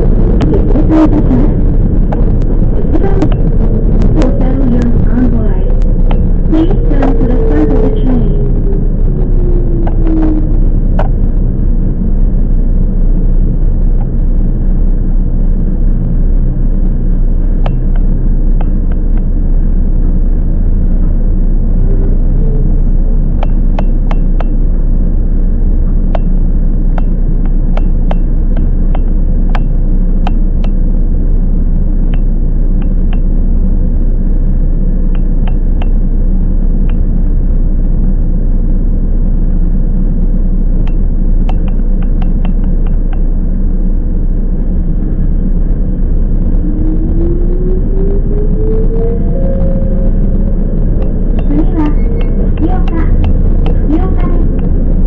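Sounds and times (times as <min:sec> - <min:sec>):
sharp clicks and rattles: 0:00.0 - 0:11.9, 0:23.2 - 0:24.9, 0:26.0 - 0:31.4, 0:32.0 - 0:34.1, 0:39.4 - 0:43.7, 0:49.9 - 0:55.0.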